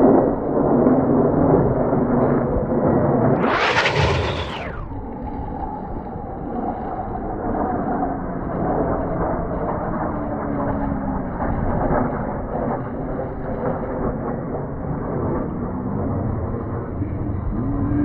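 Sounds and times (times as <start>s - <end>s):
jet engines rumbling overhead: 3.3s - 5.0s.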